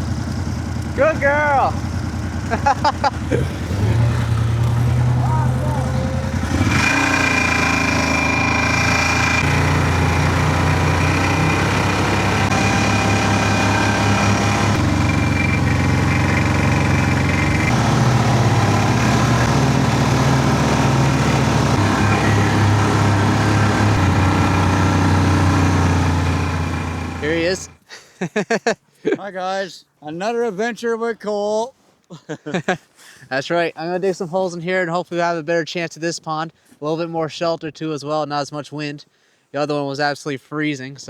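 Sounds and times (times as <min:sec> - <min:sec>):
vehicle engine running: 0:00.0 - 0:27.8.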